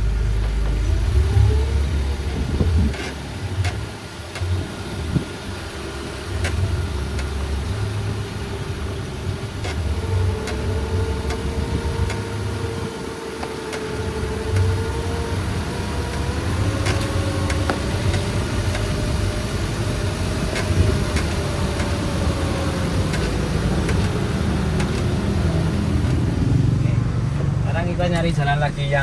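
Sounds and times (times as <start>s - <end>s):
car engine and road rumble: 0.0s - 29.0s.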